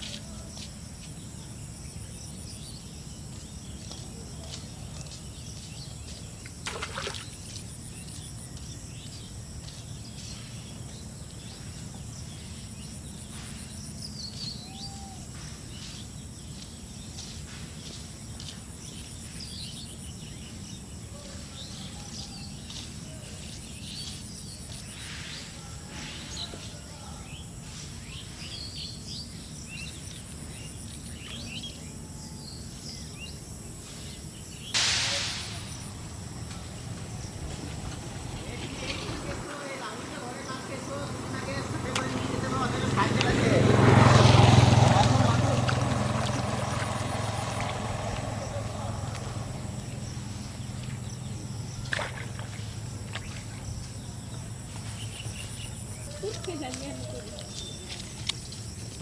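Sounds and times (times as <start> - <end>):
high insect trills: 0.0 - 59.0
steady low rumble: 34.8 - 39.5.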